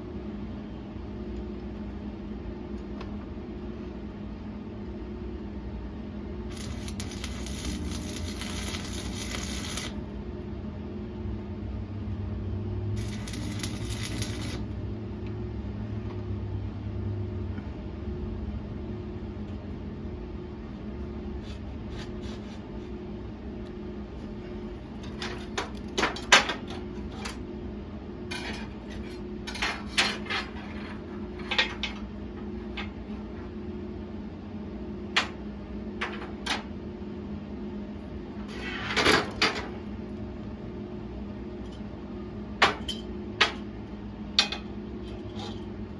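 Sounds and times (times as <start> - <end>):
steady electrical hum: 0.0 - 45.9
steel pieces clanking: 13.0 - 14.6.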